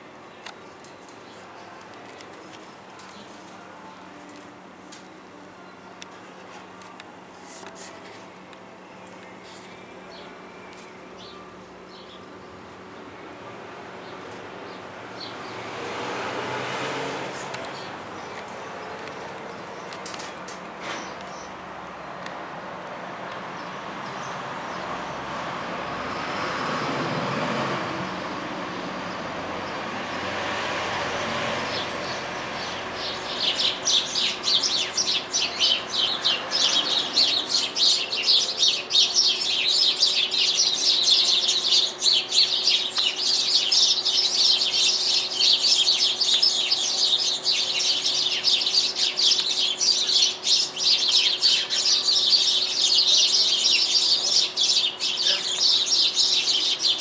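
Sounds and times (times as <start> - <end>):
vehicle passing: 13.6 - 19.5, 22.4 - 38.5
small birds chirping rapidly: 14.0 - 21.6, 23.6 - 57.0.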